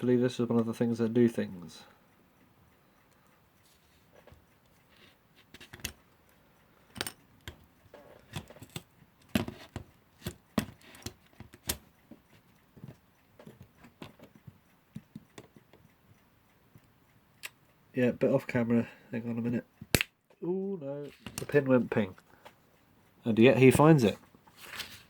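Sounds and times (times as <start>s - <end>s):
metal clock parts clicking: 3.0s - 17.7s, 21.0s - 22.4s.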